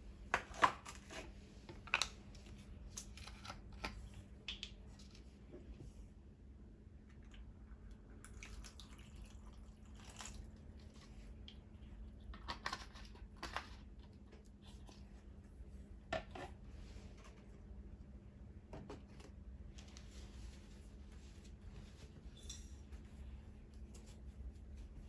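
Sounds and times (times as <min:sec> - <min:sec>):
low steady hum: 0:00.0 - 0:25.0
soft handling noises: 0:12.6 - 0:25.0.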